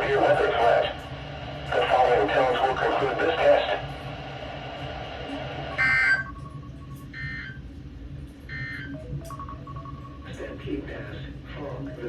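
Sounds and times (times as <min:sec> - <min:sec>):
radio hiss: 0:00.0 - 0:06.2.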